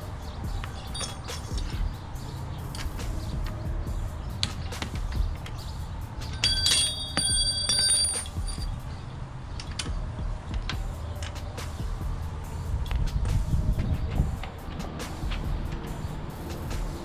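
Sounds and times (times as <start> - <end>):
hand tools clicking and knocking: 0.6 - 1.9, 6.2 - 8.8
bright metallic ring: 6.4 - 8.7.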